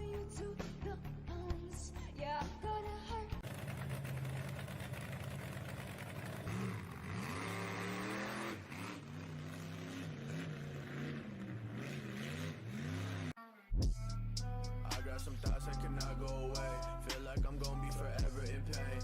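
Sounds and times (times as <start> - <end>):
car engine revving: 3.4 - 13.4.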